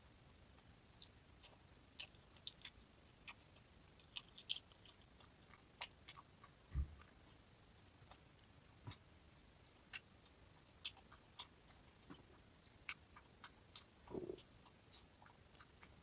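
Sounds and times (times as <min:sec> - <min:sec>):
wet mouth chewing clicks: 0:00.6 - 0:16.0
soft low thump: 0:06.7 - 0:07.0.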